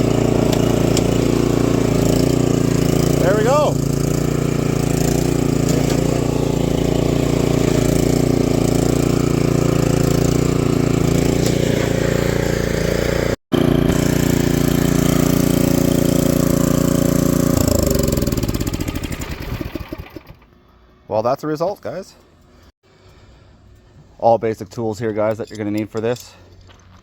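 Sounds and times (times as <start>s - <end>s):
snowblower engine running: 0.0s - 20.6s.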